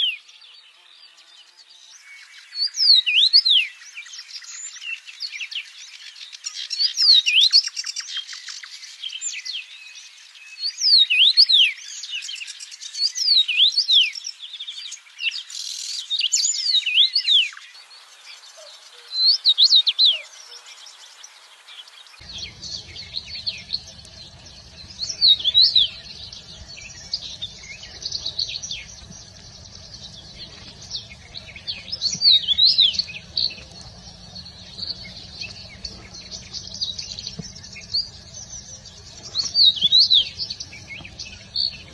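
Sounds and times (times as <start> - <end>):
songbirds chirping and whistling: 0.0 - 41.9
steady low rumble: 22.2 - 41.9.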